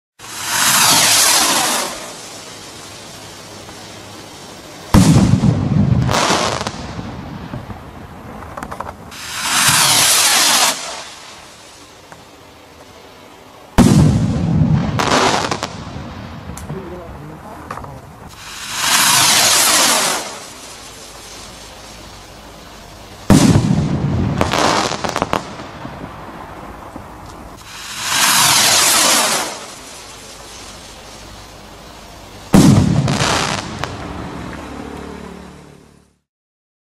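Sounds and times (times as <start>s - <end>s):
firework bangs with rumbling tail: 0.2s - 2.2s, 4.9s - 11.1s, 13.8s - 20.7s, 23.2s - 29.9s, 32.5s - 34.2s
rocket launch hiss: 0.2s - 12.3s, 13.7s - 35.3s
faint firework crackles: 0.2s - 36.3s.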